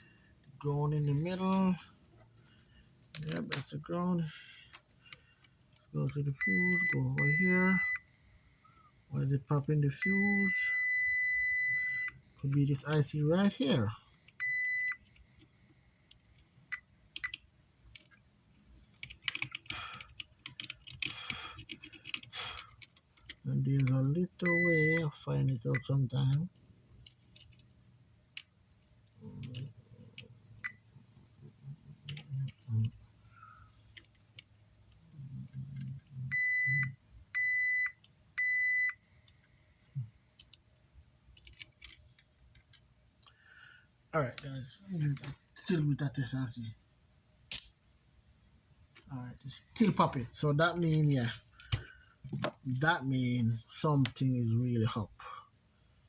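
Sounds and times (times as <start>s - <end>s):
sharp clicks: 47.5s - 47.8s.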